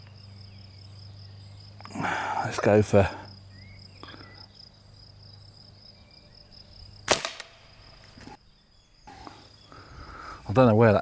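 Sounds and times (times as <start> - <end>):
faint insect buzz: 0.0 - 10.6
air rifle shot crack: 7.0 - 7.8.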